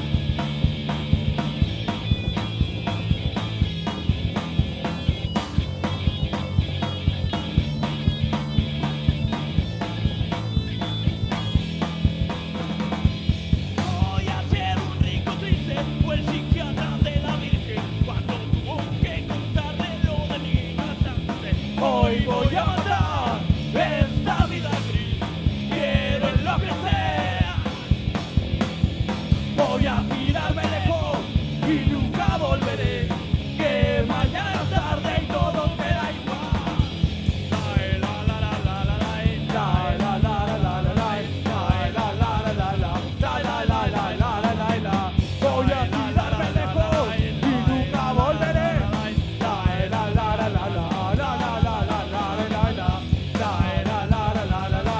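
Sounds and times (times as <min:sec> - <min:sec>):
fast driving drum beat: 0:00.0 - 0:54.9
punk rock band playing live: 0:00.0 - 0:54.9
person singing: 0:13.9 - 0:27.8, 0:29.6 - 0:36.9, 0:37.5 - 0:54.9.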